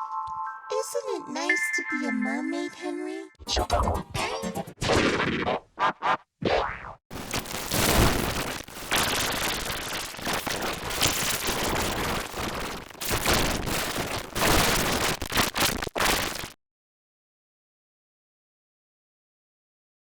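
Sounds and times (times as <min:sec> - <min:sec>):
harsh distorted crackling noise: 0:07.1 - 0:16.6.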